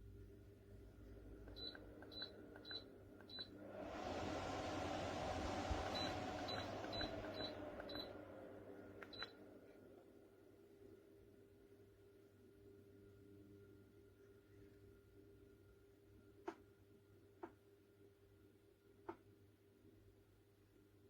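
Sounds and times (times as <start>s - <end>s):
fan airflow hiss: 0.0s - 11.1s
control panel beeps: 1.5s - 3.5s, 5.9s - 8.1s, 9.0s - 9.4s.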